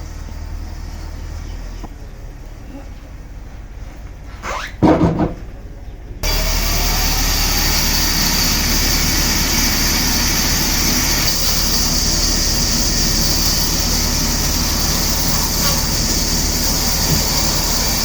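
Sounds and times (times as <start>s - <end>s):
machinery running: 6.2s - 18.0s.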